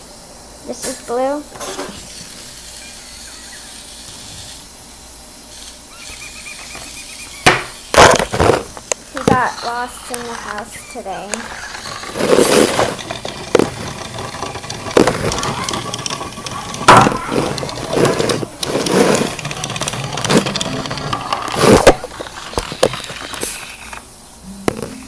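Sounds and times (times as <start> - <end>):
rustling and knocking from handling: 7.5 - 10.6, 11.2 - 23.6.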